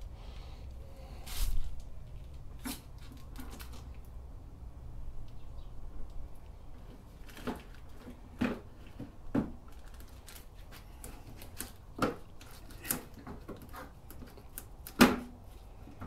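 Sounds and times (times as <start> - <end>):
small clicks and crinkles: 1.6 - 4.2, 6.0 - 16.0.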